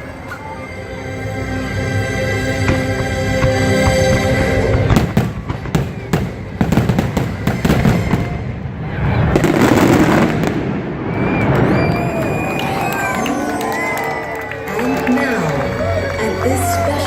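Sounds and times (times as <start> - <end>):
orchestral music: 0.0 - 11.7, 12.6 - 17.0
fireworks bangs and crackling: 2.7 - 15.2.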